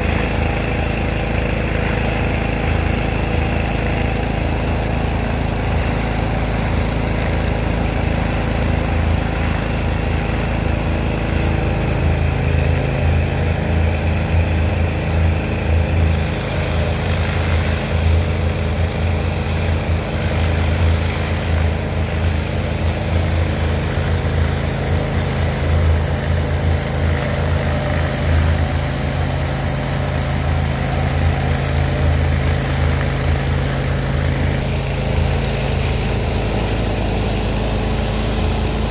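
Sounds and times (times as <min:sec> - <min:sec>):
pressure washer engine droning: 0:00.0 - 0:38.9
water spray hissing: 0:13.9 - 0:38.9.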